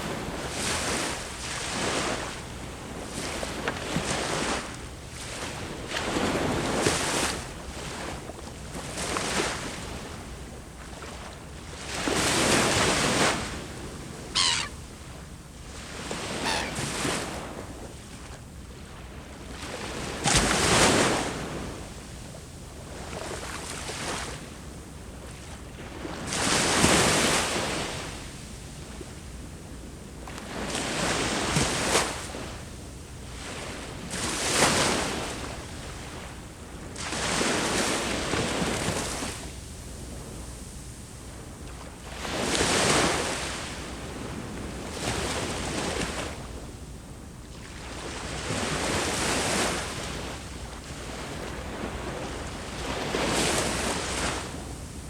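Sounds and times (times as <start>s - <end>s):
sea waves breaking on shore: 0.0s - 19.1s, 47.5s - 55.0s.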